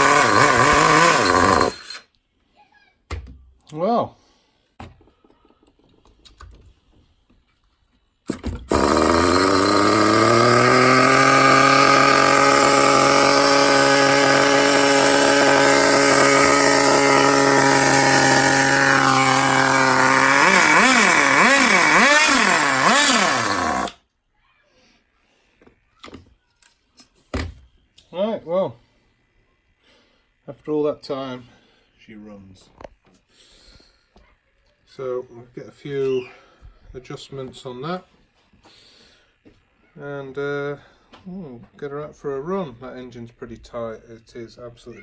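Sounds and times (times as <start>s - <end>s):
nitro rc car engine revving: 0.0s - 2.1s, 8.3s - 24.0s.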